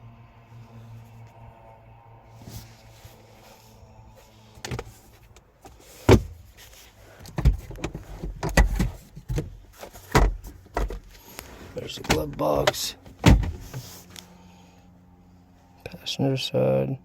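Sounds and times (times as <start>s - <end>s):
car door clunks and knocks: 6.0s - 6.4s, 7.3s - 11.1s, 12.0s - 13.8s.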